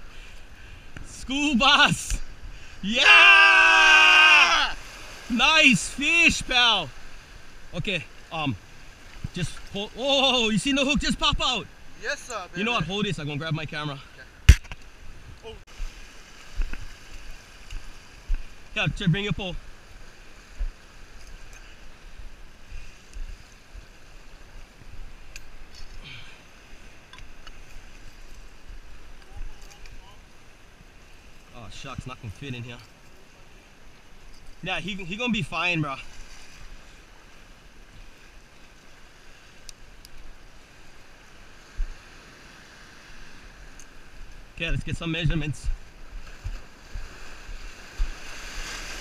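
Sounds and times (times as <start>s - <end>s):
faint water wash: 0.0s - 49.0s
sea and wind noise: 0.0s - 49.0s
wind rumbling on microphone: 40.2s - 49.0s.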